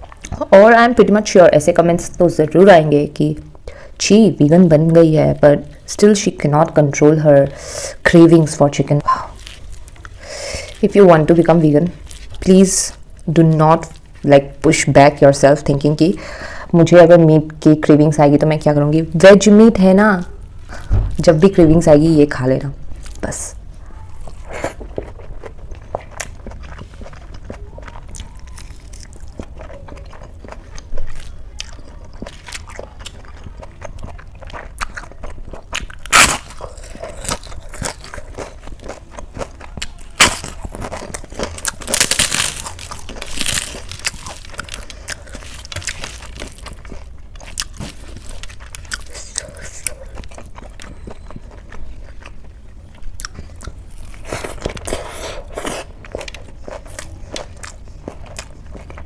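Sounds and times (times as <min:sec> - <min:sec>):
person chewing food: 0:09.1 - 0:10.9, 0:22.9 - 0:59.0
crunchy bites: 0:24.6 - 0:51.6.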